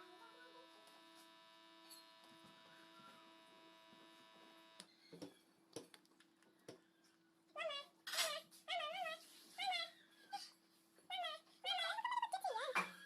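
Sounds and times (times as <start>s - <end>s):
small motor whining: 0.0s - 4.9s.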